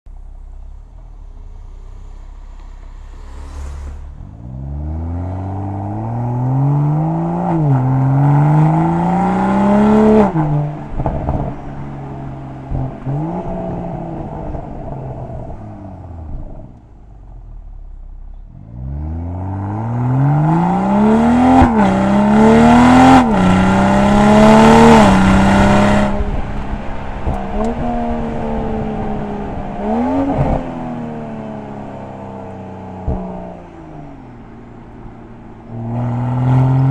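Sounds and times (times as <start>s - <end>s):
car engine revving: 0.3s - 16.8s, 18.5s - 36.9s
exhaust crackles and pops: 26.1s - 28.4s.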